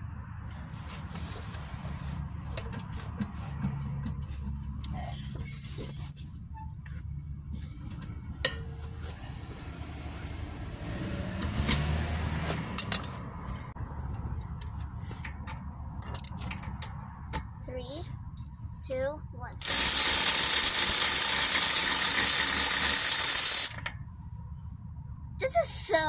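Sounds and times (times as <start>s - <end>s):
low engine rumble: 0.0s - 19.7s
metallic clinks of tire tools: 12.7s - 13.3s, 14.1s - 17.0s.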